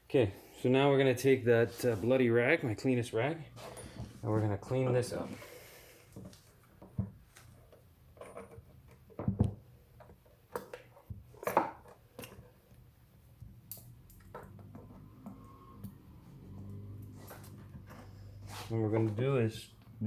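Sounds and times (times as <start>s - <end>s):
metal tools clinking: 13.7s - 15.0s.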